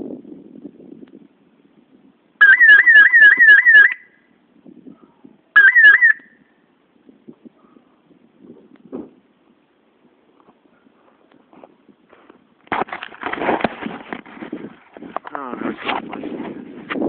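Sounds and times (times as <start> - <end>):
fire alarm horn sweeping: 2.4 - 4.1, 5.6 - 6.3.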